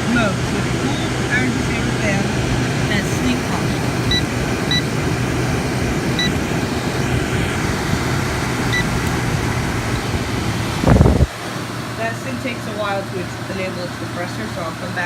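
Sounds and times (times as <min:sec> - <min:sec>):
air conditioner fan running: 0:00.0 - 0:15.0
control panel beeping: 0:03.1 - 0:05.1, 0:06.1 - 0:06.4, 0:08.7 - 0:09.2.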